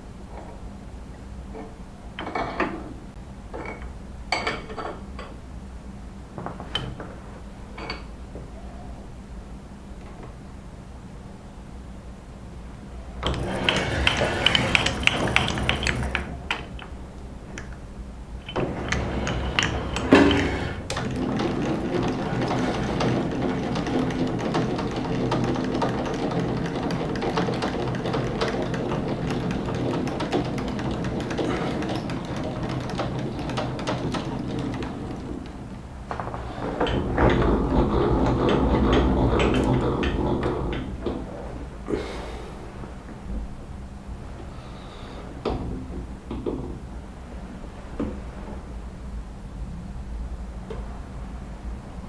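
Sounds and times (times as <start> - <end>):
rattle of cutting steel: 13.2 - 17.0, 18.4 - 35.4
machine tool motor hum: 13.2 - 17.1, 18.4 - 41.2.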